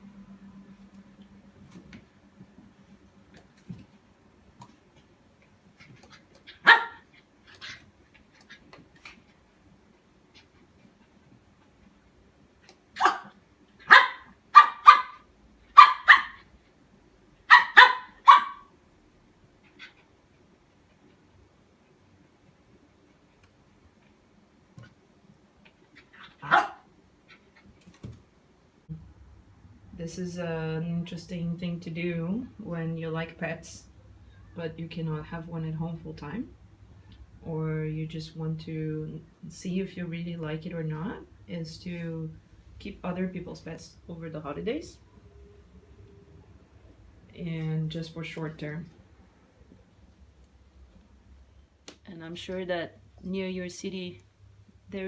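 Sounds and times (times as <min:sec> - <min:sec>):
soft noisy sound: 0:00.0 - 0:55.0
dog barking: 0:06.5 - 0:07.0, 0:13.0 - 0:15.2, 0:15.8 - 0:16.4, 0:17.5 - 0:18.7, 0:26.4 - 0:26.9
soft dog yap: 0:17.5 - 0:18.7.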